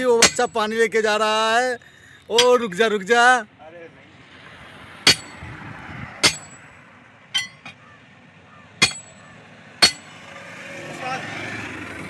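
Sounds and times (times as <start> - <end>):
hammer striking metal: 0.2 - 0.6, 2.4 - 2.6, 5.1 - 5.4, 6.2 - 6.6, 7.4 - 7.8, 8.8 - 9.2, 9.8 - 10.1.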